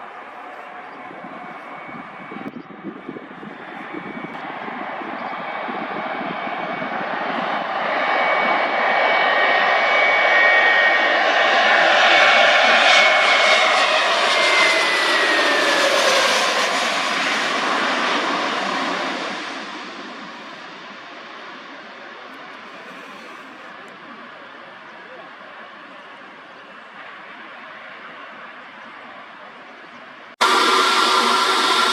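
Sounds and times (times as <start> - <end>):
jet engines passing by: 0.0 - 31.9
whining tone dropping in pitch: 30.4 - 31.9.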